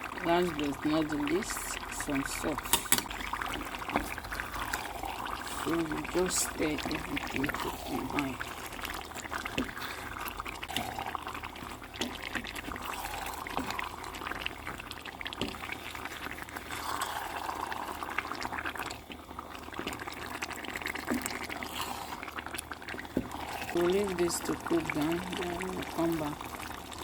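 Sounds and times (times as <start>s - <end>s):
spoon stirring thick sauce: 1.4s - 19.2s
spoon clicking against pan: 2.6s - 3.1s.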